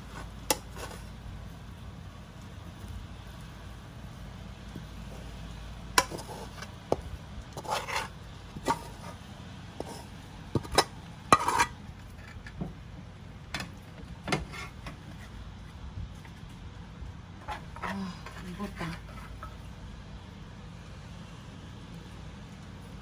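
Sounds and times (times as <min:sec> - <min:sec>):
utensil clinking and scraping pan: 0:00.0 - 0:01.3, 0:04.7 - 0:12.8, 0:13.5 - 0:15.4, 0:17.4 - 0:19.8
faint steady hum: 0:00.0 - 0:23.0.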